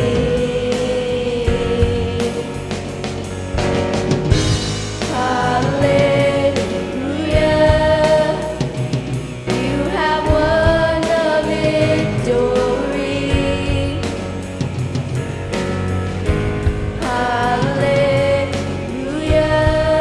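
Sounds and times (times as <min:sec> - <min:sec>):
band with steady drum beat: 0:00.0 - 0:20.0
singers holding long notes: 0:04.8 - 0:14.6, 0:17.0 - 0:20.0.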